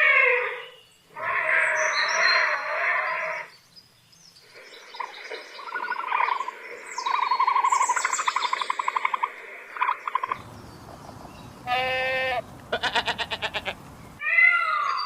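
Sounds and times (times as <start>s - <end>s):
bird trilling: 9.8s - 15.0s.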